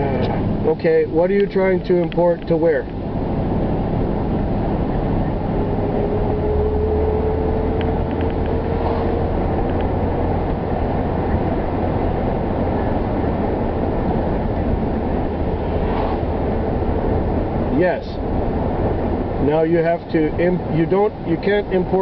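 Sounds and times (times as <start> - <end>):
car engine and road noise: 0.0 - 22.0
faint rising hum: 3.0 - 19.3.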